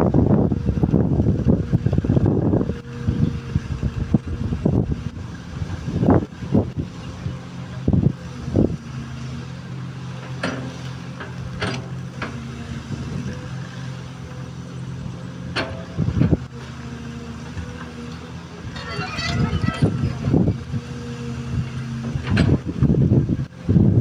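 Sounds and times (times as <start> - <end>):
excavator diesel engine running: 0.0 - 24.0
machine knocks and clunks: 10.3 - 12.5, 22.0 - 23.0.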